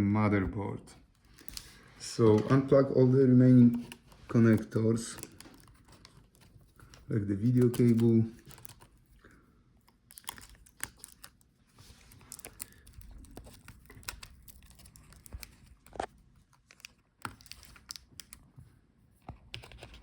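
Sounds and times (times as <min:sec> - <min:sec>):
cable connectors clicking: 0:03.5 - 0:08.9, 0:09.8 - 0:11.5, 0:12.2 - 0:18.5.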